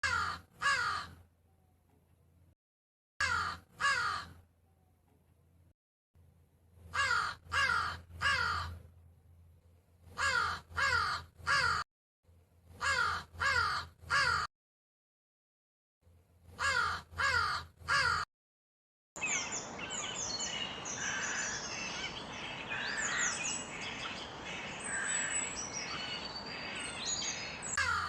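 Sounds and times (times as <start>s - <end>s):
crow cawing: 0.0s - 1.2s, 3.2s - 4.4s, 6.9s - 8.8s, 10.2s - 11.8s, 12.8s - 14.5s, 16.6s - 18.3s, 19.2s - 28.0s.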